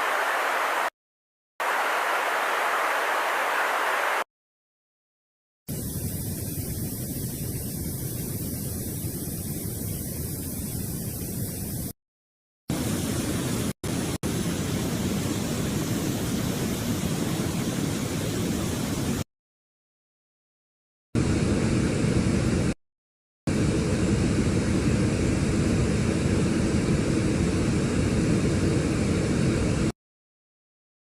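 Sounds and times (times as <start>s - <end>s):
rushing static-like noise: 0.0s - 0.9s, 1.6s - 4.2s, 5.7s - 12.0s, 12.7s - 19.2s.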